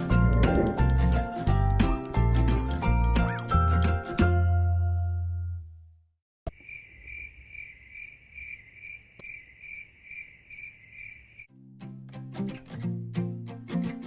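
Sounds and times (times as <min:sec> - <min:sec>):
background music: 0:00.0 - 0:05.3
cricket chirping: 0:06.5 - 0:11.5.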